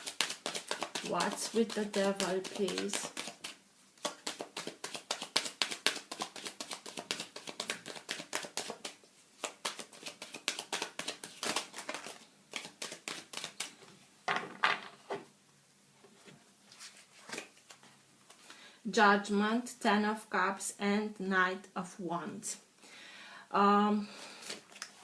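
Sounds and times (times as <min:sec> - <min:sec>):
cards being shuffled: 0:00.0 - 0:13.8, 0:16.7 - 0:18.4, 0:24.4 - 0:25.0.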